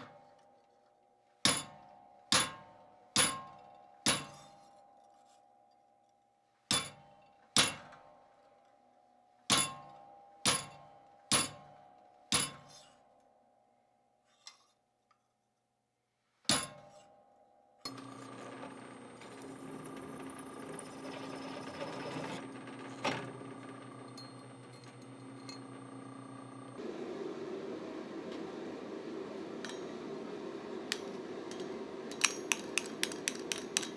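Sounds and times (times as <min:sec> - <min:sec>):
electric motor hum with whine: 0:17.9 - 0:33.9.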